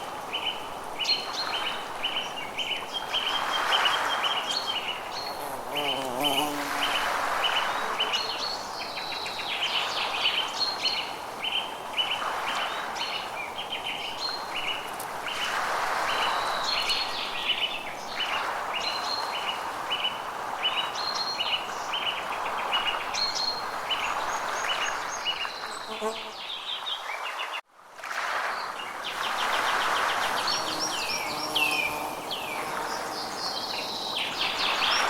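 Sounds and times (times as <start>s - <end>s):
natural ambience hiss: 0.0s - 35.0s
birds chirping: 4.8s - 9.3s.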